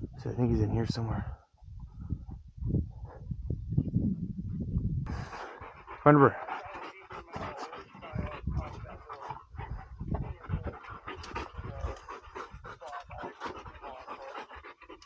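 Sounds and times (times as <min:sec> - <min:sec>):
dog panting: 0:02.7 - 0:03.5, 0:05.1 - 0:15.0.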